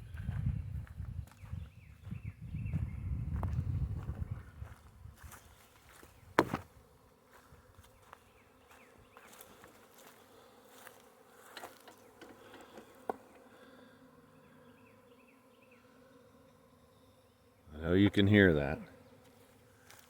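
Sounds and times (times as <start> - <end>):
bees buzzing: 5.6 - 20.0.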